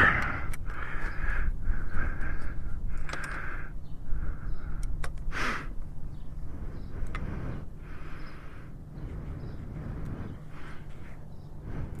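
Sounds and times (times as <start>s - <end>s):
sharp clicks: 2.2s - 3.7s, 4.6s - 5.3s, 7.0s - 7.3s.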